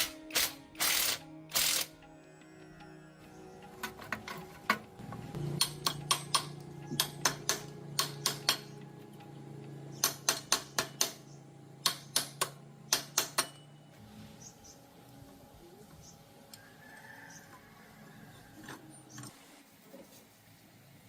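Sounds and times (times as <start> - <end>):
sharp metallic taps on metal: 5.6 - 8.8, 10.0 - 13.7.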